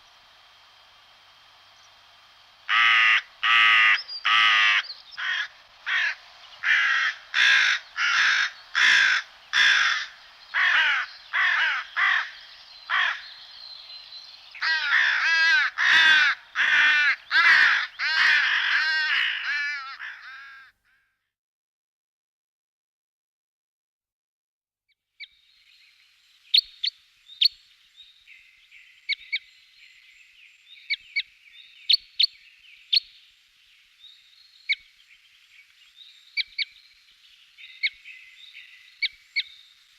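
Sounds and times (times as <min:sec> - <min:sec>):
crow cawing: 0:02.7 - 0:13.4, 0:14.6 - 0:21.2.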